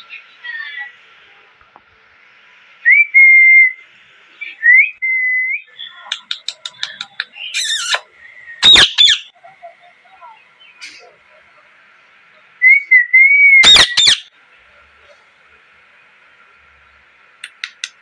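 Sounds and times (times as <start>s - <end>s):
parrot chirps: 5.8s - 9.3s, 13.6s - 14.3s
parrot whistling: 7.5s - 9.3s, 13.6s - 14.3s
parrot screeches: 7.6s - 9.3s, 13.6s - 14.3s.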